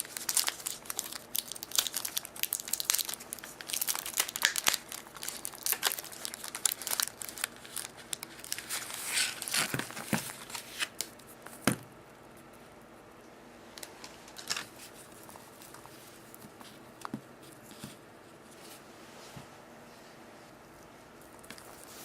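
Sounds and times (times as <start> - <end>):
wrapper crinkling and tearing: 0.0 - 11.1.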